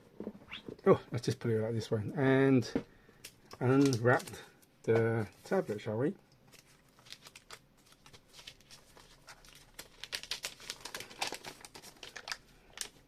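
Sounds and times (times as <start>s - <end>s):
plastic wrap crinkling: 3.6s - 4.5s, 6.4s - 13.0s.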